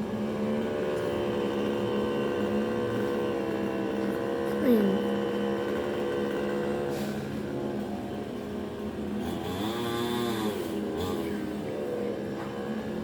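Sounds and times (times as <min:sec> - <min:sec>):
chainsaw engine revving: 0:00.8 - 0:07.4, 0:09.2 - 0:11.6.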